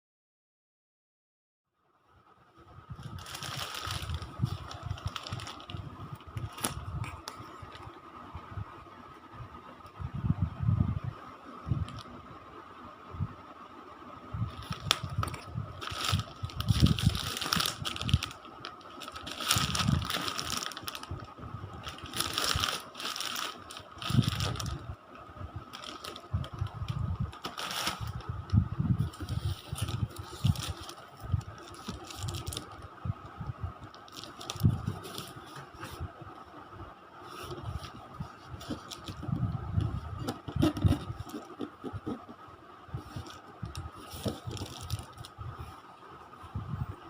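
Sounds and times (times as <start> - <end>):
faint steady whine: 1.7 - 47.0
packaging rustling and crinkling: 2.9 - 7.9, 14.5 - 25.0, 25.6 - 33.0, 33.9 - 36.1, 37.3 - 42.4, 43.0 - 45.4.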